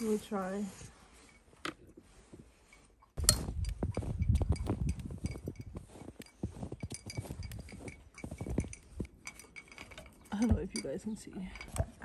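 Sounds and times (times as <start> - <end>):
bird feeder clinking and rattling: 2.8 - 12.0.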